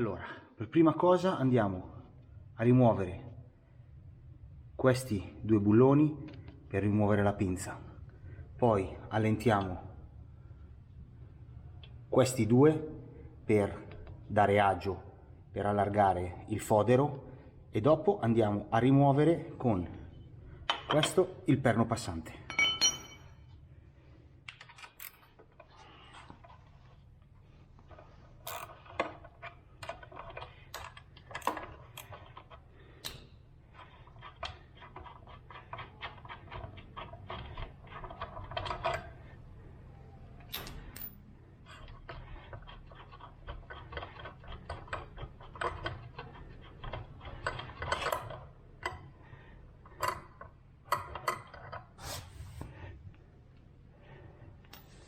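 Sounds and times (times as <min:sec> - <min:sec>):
metal hand tools clinking: 0:22.5 - 0:23.4.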